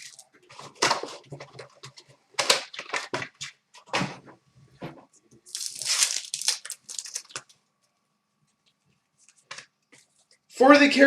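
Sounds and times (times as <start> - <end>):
card pack wrappers tearing and crinkling: 2.4 - 3.5, 5.5 - 7.6.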